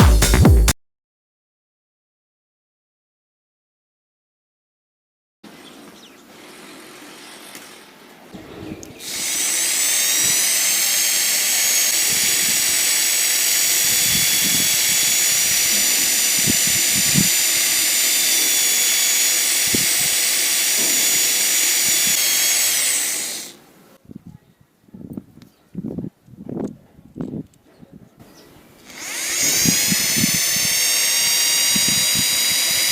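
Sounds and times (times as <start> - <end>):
electric drill motor whining: 9.0 - 23.6, 28.8 - 32.9.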